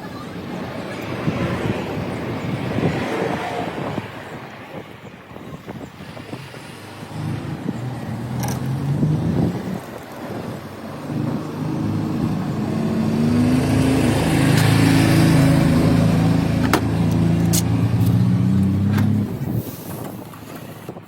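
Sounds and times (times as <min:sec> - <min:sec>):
vehicle engine running: 0:07.0 - 0:19.6.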